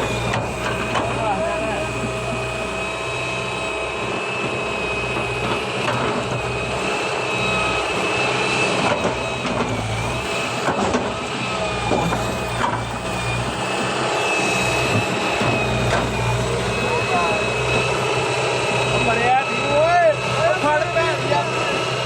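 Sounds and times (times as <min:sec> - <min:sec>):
excavator engine running: 0:00.0 - 0:22.0.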